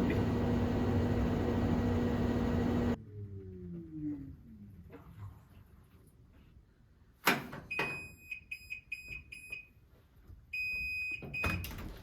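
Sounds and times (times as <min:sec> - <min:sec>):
washing machine beeping: 0:00.0 - 0:03.0, 0:07.7 - 0:09.8, 0:10.5 - 0:11.8.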